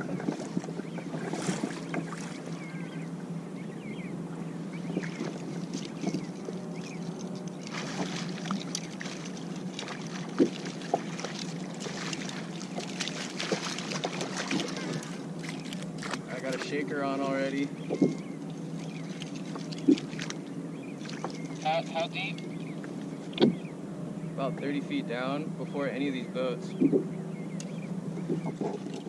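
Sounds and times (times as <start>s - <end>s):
water splashing against kayak hull: 0.0s - 2.9s, 4.8s - 23.6s
steady low hum: 0.0s - 29.0s.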